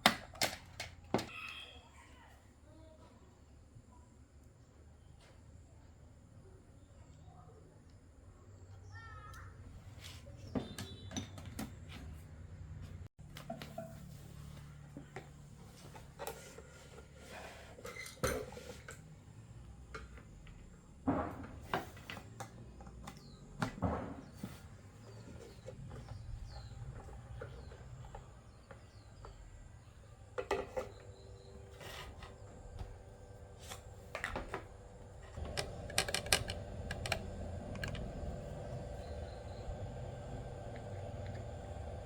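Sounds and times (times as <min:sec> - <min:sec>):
low steady hum: 0:25.6 - 0:42.0
tools clinking and clattering: 0:33.6 - 0:38.2.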